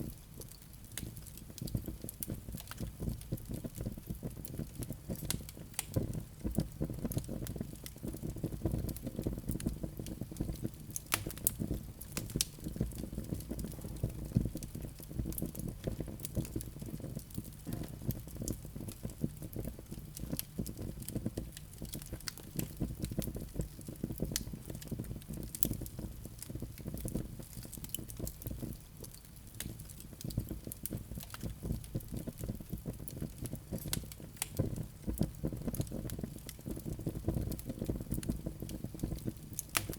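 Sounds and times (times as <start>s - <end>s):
low rumble of burning logs: 0.0s - 39.9s
wood fire crackling: 0.0s - 39.9s.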